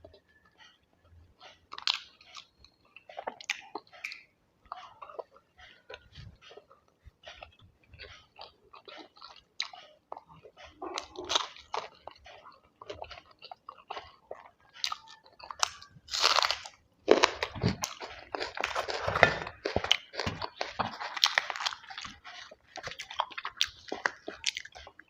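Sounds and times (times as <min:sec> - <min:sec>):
person chewing and crunching food: 0:00.0 - 0:25.0
wet mouth clicks: 0:03.3 - 0:04.3.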